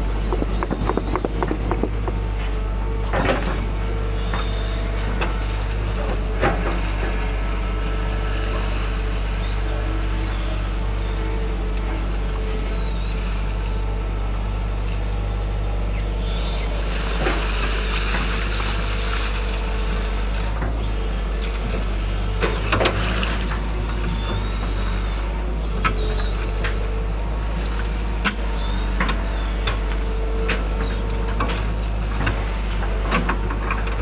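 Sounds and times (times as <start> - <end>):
excavator diesel engine: 0.0 - 34.0
machine knocks and rattles: 0.2 - 3.6.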